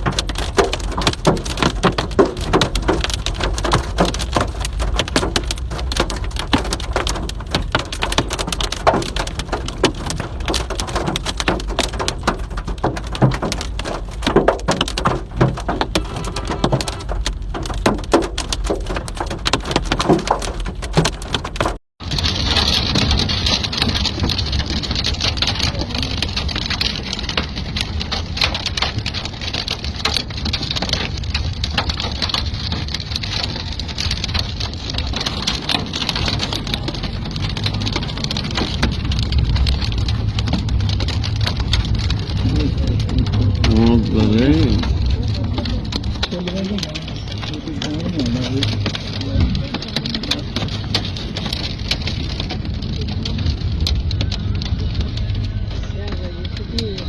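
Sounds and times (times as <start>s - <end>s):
hailstones pelting down: 0.0s - 57.0s
hissing downpour: 0.0s - 57.0s.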